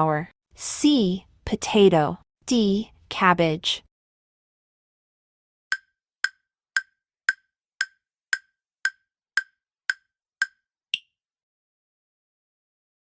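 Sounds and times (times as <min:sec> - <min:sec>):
countdown timer ticking: 0:05.7 - 0:11.1.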